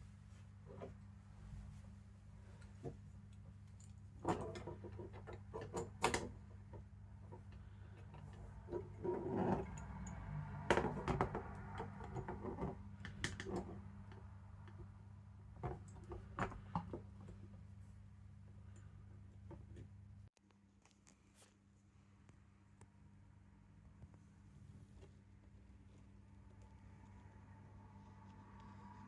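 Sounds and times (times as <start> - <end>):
light clicks and taps of metal parts: 2.5 - 15.0.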